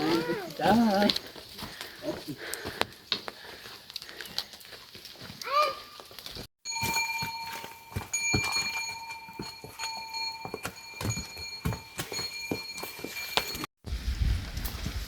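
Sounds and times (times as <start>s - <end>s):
small bell ringing: 6.7s - 13.7s.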